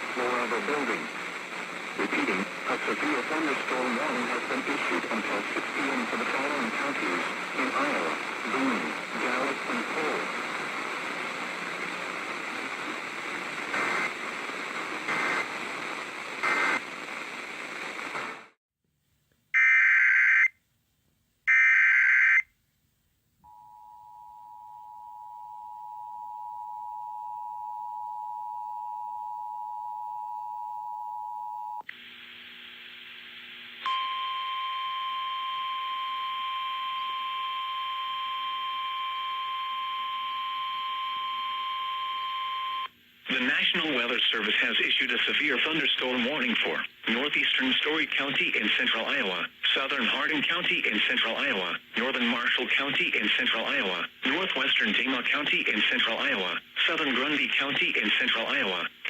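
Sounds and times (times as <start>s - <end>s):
radio static hiss: 0.0s - 18.6s, 31.9s - 33.9s, 43.0s - 59.0s.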